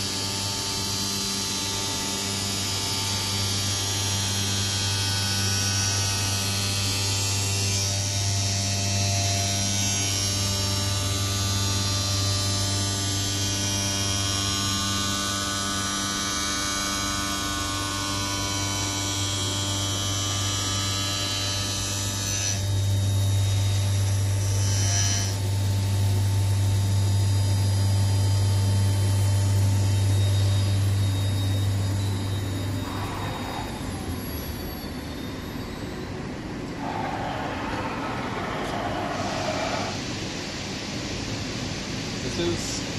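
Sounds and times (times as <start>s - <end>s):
machine whining tones: 9.6s - 41.4s
high grinding hiss: 31.3s - 42.9s.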